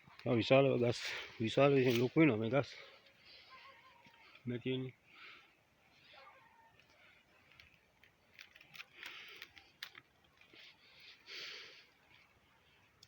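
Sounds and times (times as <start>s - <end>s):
soft hissy rustles: 0.2s - 4.6s.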